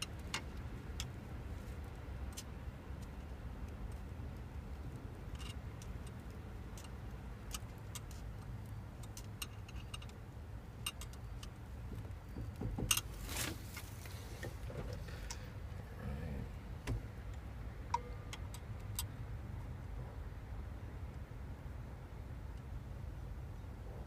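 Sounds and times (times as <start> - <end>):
rustle: 0.0 - 17.2
low steady hum: 0.0 - 24.0.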